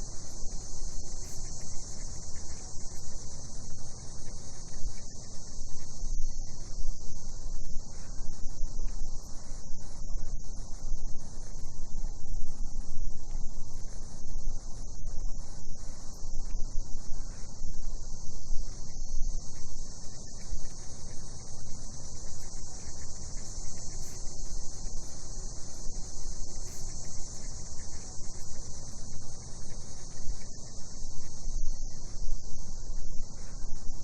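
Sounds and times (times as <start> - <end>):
cicadas buzzing: 0.1 - 4.2, 19.8 - 33.9.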